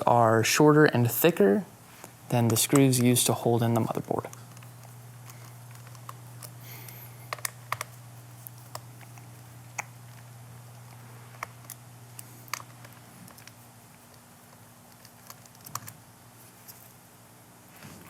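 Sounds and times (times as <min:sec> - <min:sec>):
screwdriver clicking on plastic: 0:04.3 - 0:07.9.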